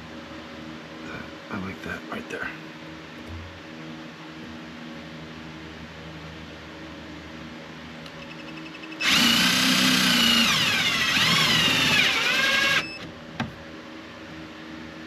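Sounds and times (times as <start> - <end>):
power drill driving screw into plastic: 9.0 - 13.1.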